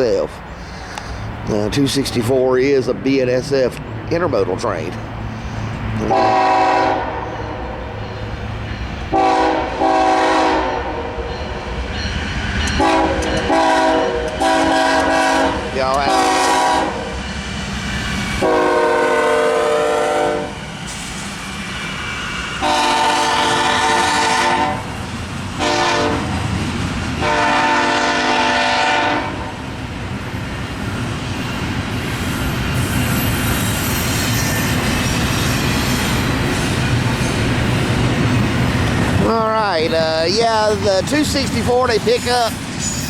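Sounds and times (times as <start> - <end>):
freight train rumble: 0.0 - 43.0
locomotive horn blasts: 6.0 - 7.8, 9.1 - 11.2, 12.8 - 17.1, 18.4 - 20.6, 22.6 - 24.9, 25.6 - 26.3, 27.2 - 29.6.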